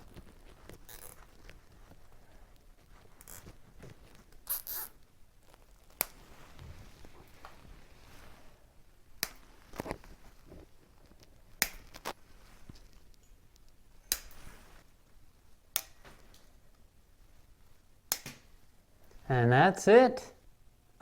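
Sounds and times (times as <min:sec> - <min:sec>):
cable ties zipping: 0:00.8 - 0:01.4, 0:04.4 - 0:05.0.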